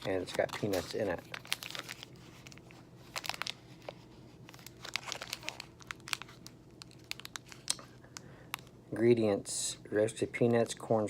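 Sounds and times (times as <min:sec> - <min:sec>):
wrapper crinkling: 0:00.0 - 0:08.7.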